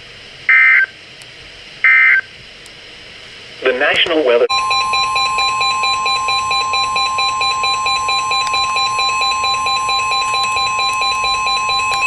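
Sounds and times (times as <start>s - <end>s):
rapid pulsing alarm beep: 4.5s - 12.0s
steady alarm tone: 4.5s - 12.0s.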